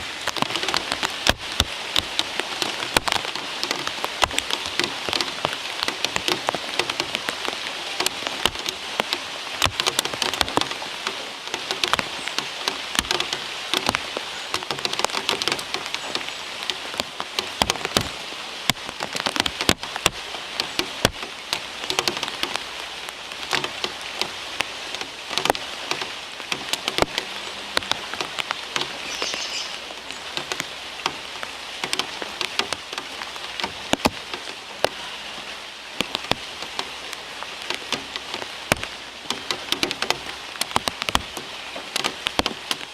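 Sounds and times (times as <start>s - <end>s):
heavy rain: 0.0s - 42.9s
sharp raindrop hits: 0.0s - 42.9s.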